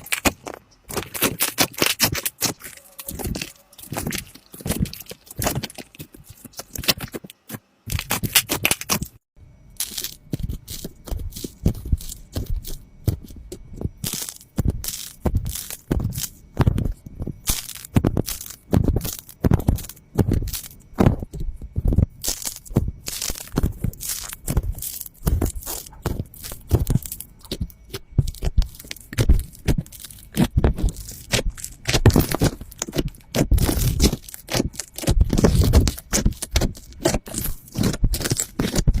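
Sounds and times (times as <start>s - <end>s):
slime squish: 0.0s - 7.3s, 22.2s - 39.0s.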